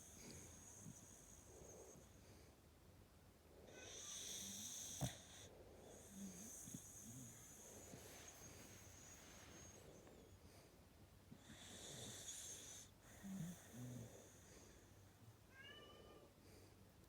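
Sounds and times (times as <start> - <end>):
dog snoring faintly: 0.0 - 2.5, 3.7 - 10.6, 11.3 - 15.3.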